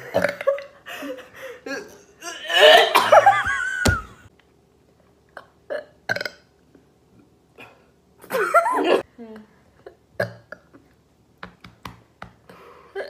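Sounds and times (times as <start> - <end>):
woman burping: 0.0 - 0.7, 1.6 - 3.4, 5.4 - 6.4.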